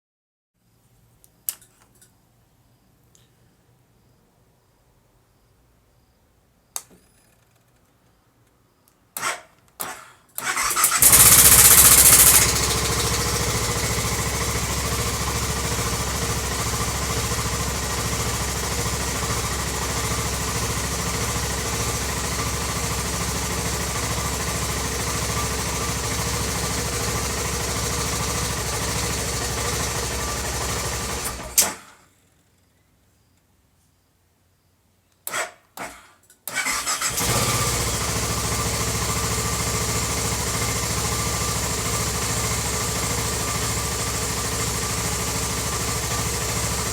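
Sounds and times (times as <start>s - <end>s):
short starter buzzes: 9.2s - 14.2s, 35.3s - 39.7s
motorcycle engine idling: 10.5s - 31.5s, 36.8s - 46.9s.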